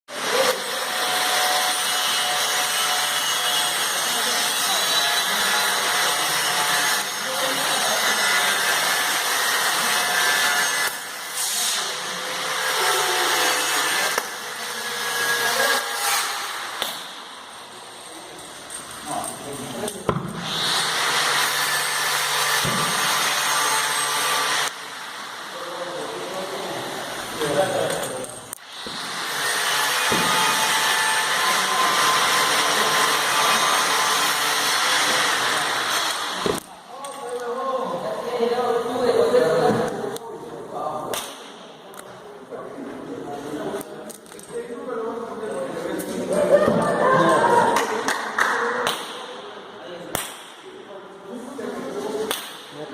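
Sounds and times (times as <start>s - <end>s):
welding torch flame hissing: 10.8s - 14.6s.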